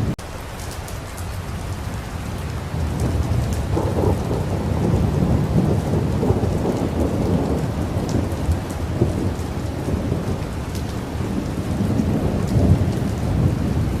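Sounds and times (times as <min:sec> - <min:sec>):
rain falling: 0:00.0 - 0:14.0
low rumble of thunder: 0:01.4 - 0:14.0.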